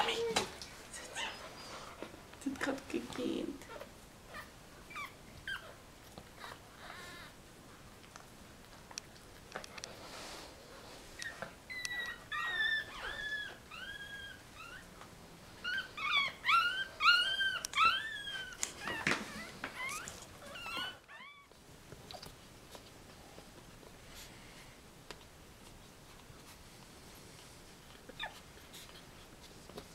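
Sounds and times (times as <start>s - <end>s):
puppies squeaking and whining: 1.0s - 2.0s, 3.7s - 7.4s, 11.2s - 15.0s, 15.6s - 21.6s, 27.9s - 29.4s.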